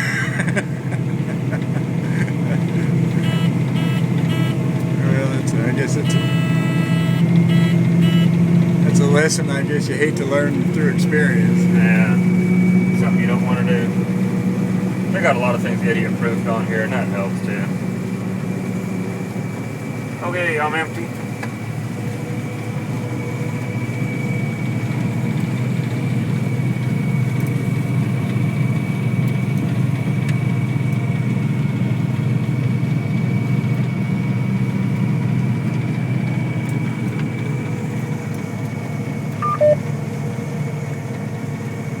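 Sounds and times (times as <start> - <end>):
combine harvester drone: 0.0 - 42.0
electronic beep: 39.4 - 39.8
thin high tone: 39.4 - 39.8.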